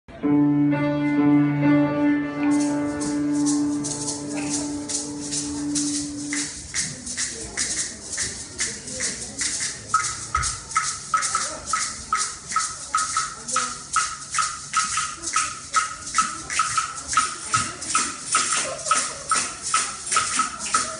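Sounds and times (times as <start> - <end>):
held low note: 0.1 - 6.8
shaker rattle beat: 2.4 - 20.9.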